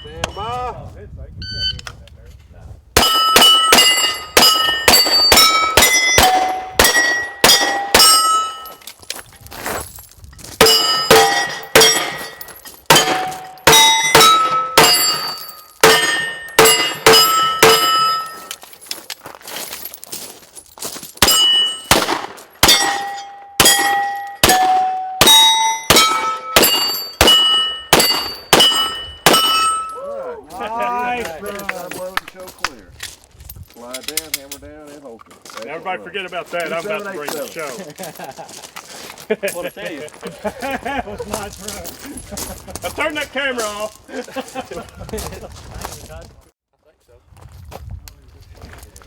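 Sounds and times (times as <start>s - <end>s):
pistol shots: 3.0s - 8.6s, 10.6s - 18.3s, 21.2s - 29.9s
steel targets ringing: 3.0s - 8.8s, 10.6s - 18.6s, 21.2s - 30.0s.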